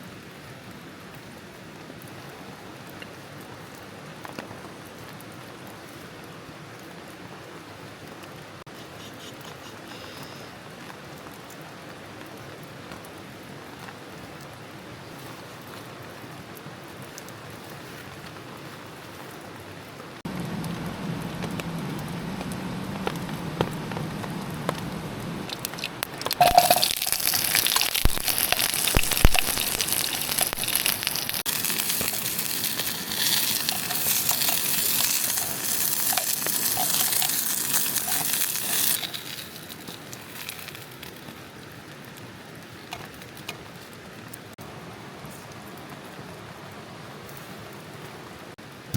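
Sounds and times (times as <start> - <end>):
rain falling: 10.6 - 48.9.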